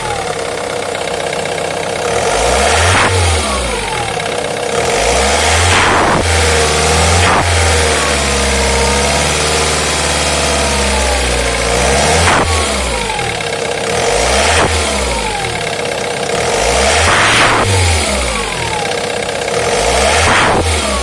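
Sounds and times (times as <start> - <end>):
diesel engine revving: 0.0 - 21.0
turbocharger whistle: 5.0 - 9.5, 11.8 - 13.0, 19.9 - 21.0.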